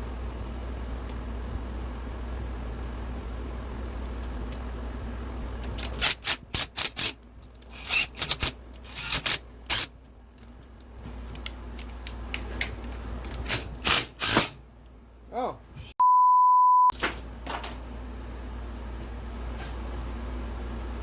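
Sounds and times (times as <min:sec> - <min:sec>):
steady low hum: 0:00.0 - 0:16.0
hand tools and metal parts clinking: 0:05.6 - 0:14.5.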